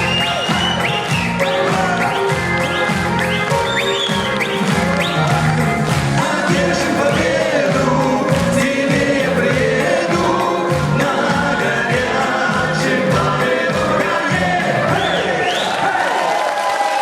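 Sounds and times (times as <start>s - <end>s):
live band playing: 0.0s - 15.4s
crowd singing along: 4.5s - 16.1s.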